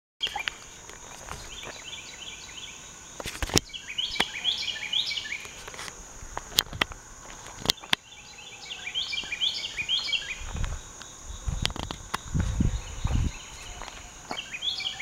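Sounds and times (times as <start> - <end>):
high insect drone: 0.2 - 15.0
coyote calls: 3.6 - 5.6, 12.2 - 15.0.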